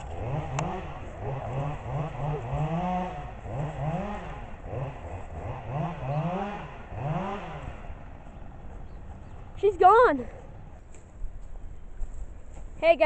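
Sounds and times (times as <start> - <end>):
engine revving: 0.0 - 10.7.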